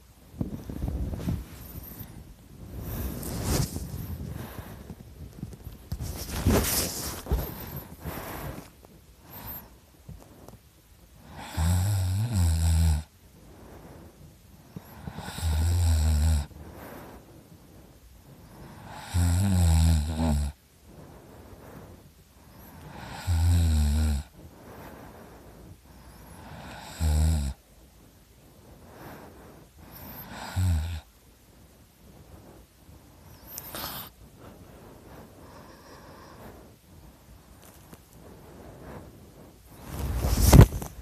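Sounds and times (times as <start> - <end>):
quiet breathing: 0.0 - 41.0
person snoring: 11.3 - 13.1, 14.9 - 16.6, 18.7 - 20.6, 22.8 - 24.3, 26.3 - 27.6, 30.0 - 31.1.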